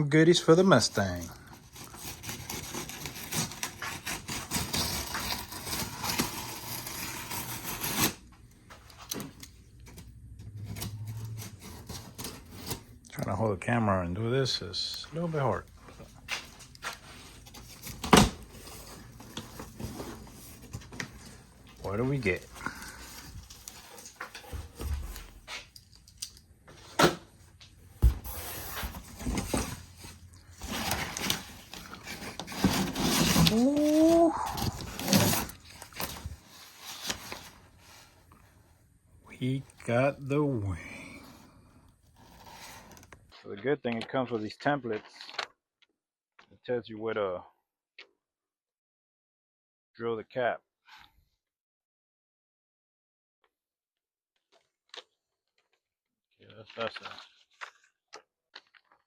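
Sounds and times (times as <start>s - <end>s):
packing material rustling: 28.3s - 38.2s.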